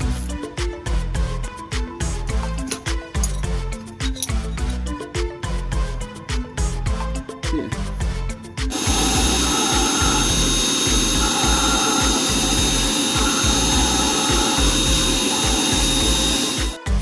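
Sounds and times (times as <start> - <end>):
cut-off saw cutting: 8.7 - 16.8.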